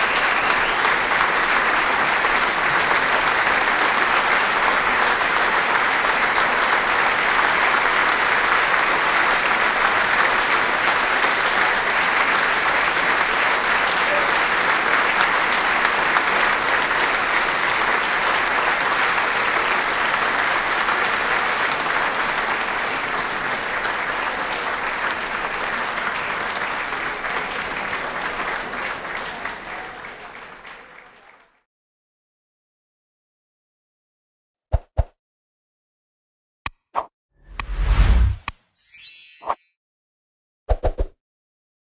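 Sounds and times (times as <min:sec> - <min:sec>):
audience applauding: 0:00.0 - 0:31.6.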